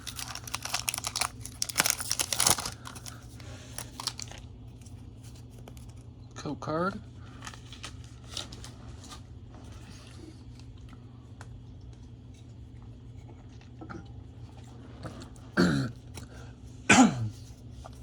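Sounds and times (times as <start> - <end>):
trading cards being handled: 0.0 - 6.0
low electrical hum: 0.0 - 18.0
person clearing throat: 15.6 - 16.0, 16.9 - 17.3.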